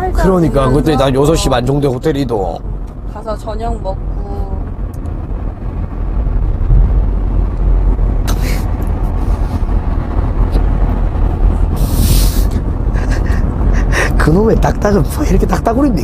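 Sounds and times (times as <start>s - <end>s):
car cabin road rumble: 0.0s - 16.0s
short hissing bursts: 11.8s - 12.6s.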